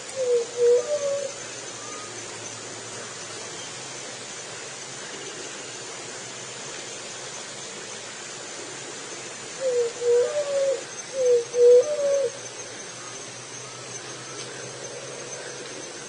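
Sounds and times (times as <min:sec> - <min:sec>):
dove cooing: 0:00.0 - 0:02.2, 0:09.6 - 0:12.4
steady hiss: 0:00.0 - 0:16.0.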